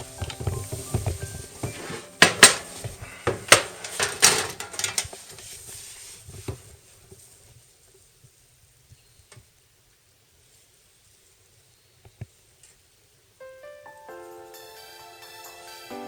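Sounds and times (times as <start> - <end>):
sheet metal clanking and rattling: 0.0 - 5.2.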